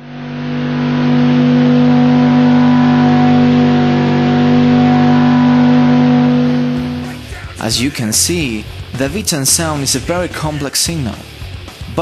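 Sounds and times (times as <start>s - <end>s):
engine at steady rpm: 0.0s - 8.0s.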